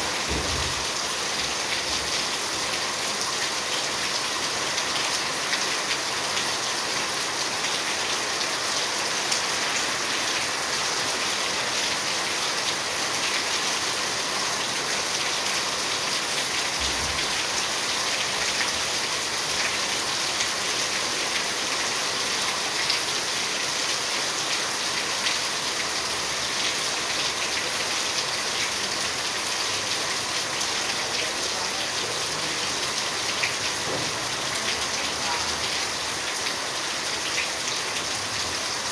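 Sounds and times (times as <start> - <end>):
steady rain falling: 0.0 - 38.9
brief low thump: 0.2 - 0.9.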